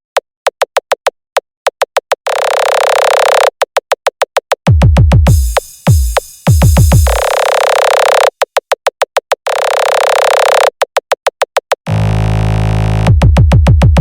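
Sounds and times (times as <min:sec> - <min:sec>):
hard kick drums: 0:04.7 - 0:07.5, 0:13.1 - 0:14.0
buzzing synth tone: 0:05.3 - 0:08.0, 0:11.9 - 0:13.1.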